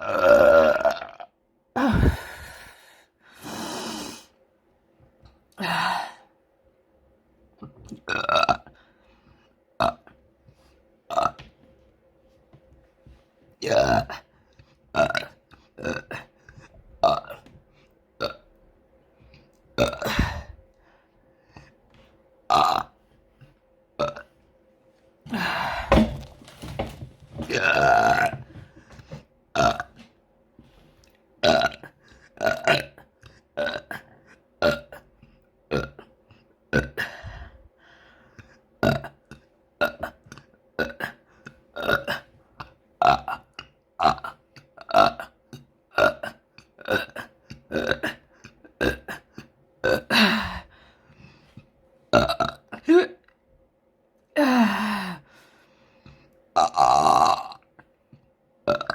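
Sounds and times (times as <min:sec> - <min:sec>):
person burping: 0:00.0 - 0:02.5, 0:07.6 - 0:08.7, 0:09.8 - 0:10.1, 0:11.1 - 0:11.4, 0:13.6 - 0:14.3, 0:14.9 - 0:16.4, 0:17.0 - 0:17.5, 0:18.2 - 0:18.5, 0:19.8 - 0:20.6, 0:22.5 - 0:23.0, 0:24.0 - 0:24.3, 0:25.3 - 0:28.6, 0:29.6 - 0:30.0, 0:31.4 - 0:35.1, 0:35.7 - 0:36.1, 0:38.8 - 0:41.2, 0:41.8 - 0:50.7, 0:52.1 - 0:53.3, 0:56.6 - 0:57.9, 0:58.7 - 0:58.9.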